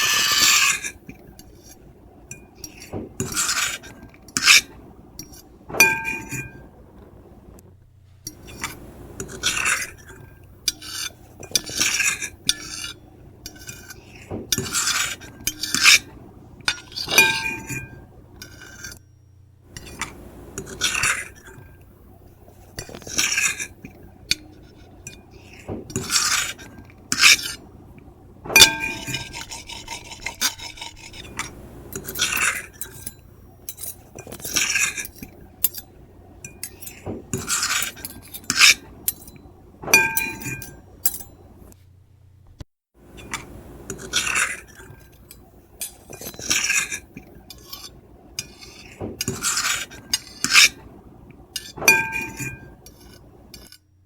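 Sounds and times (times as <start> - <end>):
cutlery scraping ceramic plate: 0.0 - 6.7, 8.3 - 19.1, 19.7 - 21.8, 22.4 - 27.7, 28.5 - 41.5, 43.1 - 51.0, 51.6 - 53.8
metal clinking on plate: 2.3 - 6.7, 16.7 - 19.2, 28.5 - 41.4, 51.6 - 53.8.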